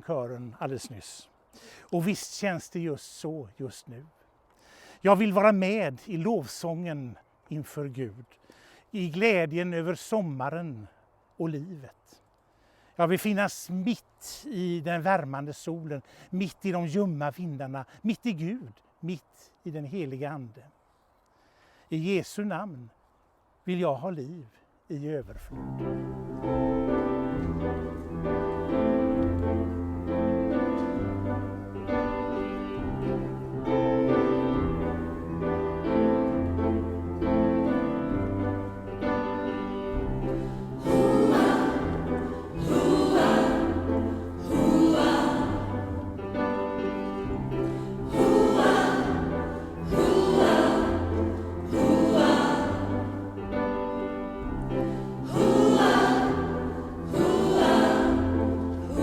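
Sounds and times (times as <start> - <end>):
keyboard chords: 25.5 - 59.0
choir singing: 26.0 - 59.0.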